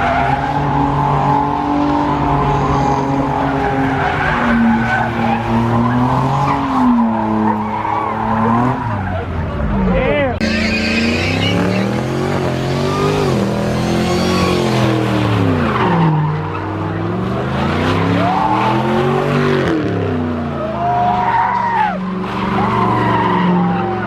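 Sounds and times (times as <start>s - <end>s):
car engine revving: 0.0s - 24.0s
tyres screeching: 10.4s - 17.0s.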